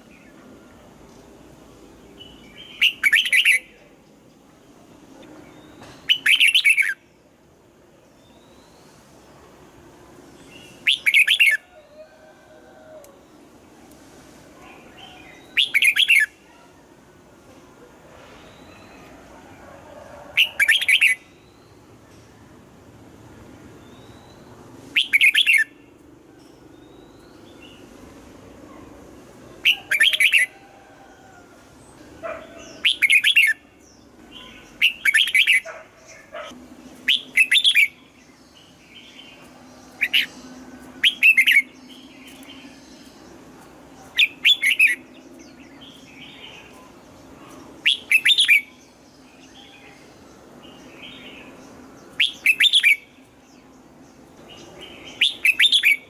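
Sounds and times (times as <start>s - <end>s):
bird singing: 1.9s - 4.4s, 5.1s - 7.1s, 10.4s - 12.2s, 14.6s - 16.7s, 23.7s - 28.0s, 28.7s - 56.0s.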